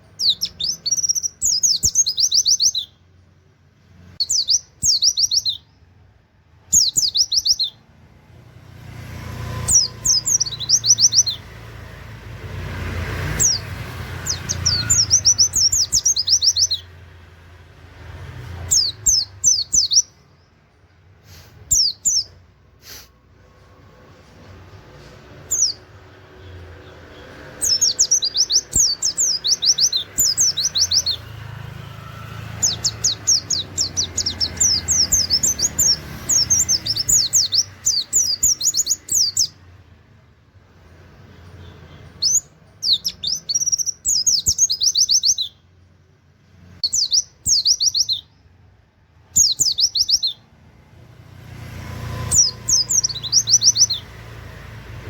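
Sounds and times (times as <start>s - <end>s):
bird singing high notes: 9.4s - 11.7s, 13.3s - 17.1s, 27.5s - 39.6s, 52.2s - 54.2s.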